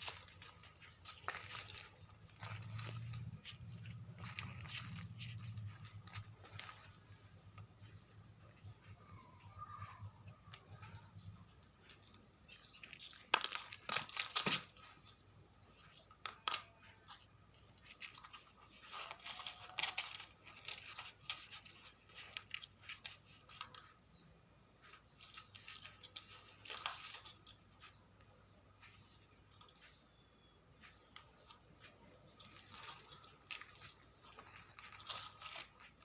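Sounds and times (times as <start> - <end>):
cat scratching and rustling: 0.0 - 36.0.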